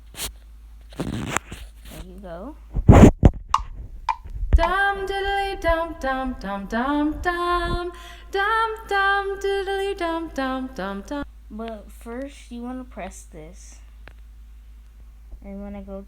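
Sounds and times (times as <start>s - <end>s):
woman singing song: 4.6s - 12.8s.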